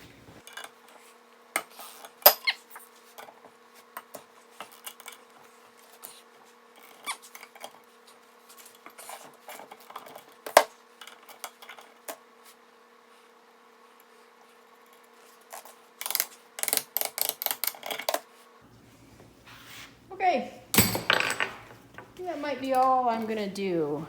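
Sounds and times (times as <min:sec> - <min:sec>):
metal engine parts clinking: 0:20.7 - 0:22.2
sharp metal clanks: 0:20.7 - 0:22.2.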